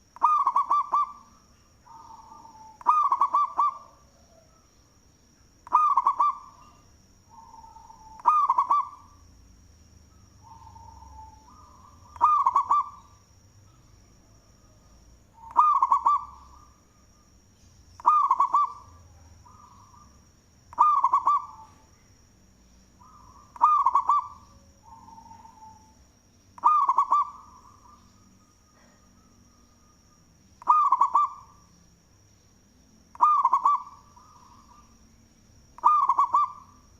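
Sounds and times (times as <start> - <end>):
dove cooing: 0.2 - 4.6, 5.7 - 6.7, 7.3 - 9.1, 10.4 - 13.2, 15.4 - 16.8, 18.0 - 21.8, 23.0 - 26.0, 26.6 - 28.2, 30.6 - 31.6, 33.1 - 34.9, 35.8 - 36.8.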